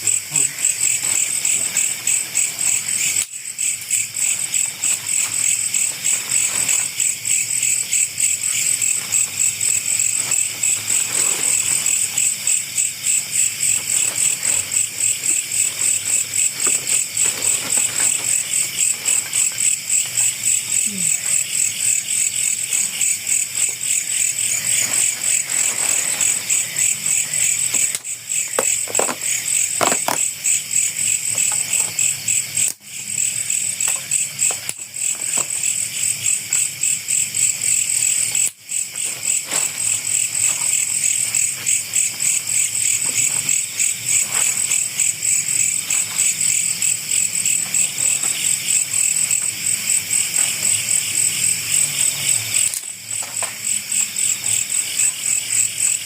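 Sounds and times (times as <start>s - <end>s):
night insects chirring: 0.0s - 56.0s.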